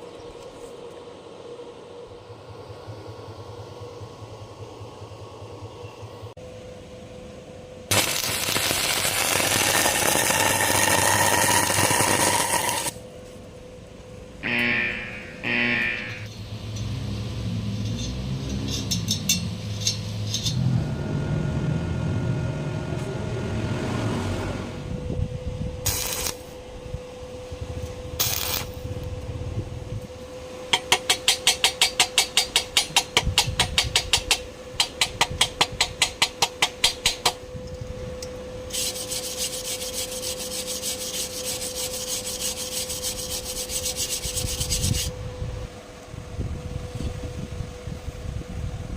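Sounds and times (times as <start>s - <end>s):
steady low hum: 0.0s - 35.2s
bursts of hiss: 7.9s - 13.0s, 28.2s - 28.8s
welding arc crackling: 7.9s - 13.0s, 14.4s - 16.3s, 25.8s - 26.6s, 28.2s - 28.9s.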